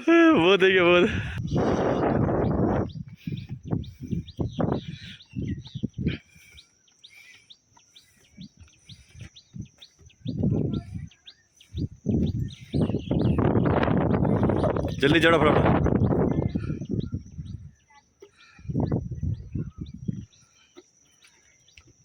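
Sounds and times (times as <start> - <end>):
low thuds and rumbles: 1.4 - 6.1
small bird chirping: 1.4 - 22.0.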